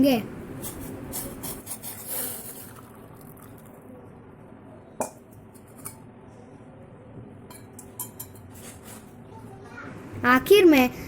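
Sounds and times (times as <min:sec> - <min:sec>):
low steady background noise: 0:00.0 - 0:11.0
kitchen utensils clinking: 0:07.5 - 0:09.2.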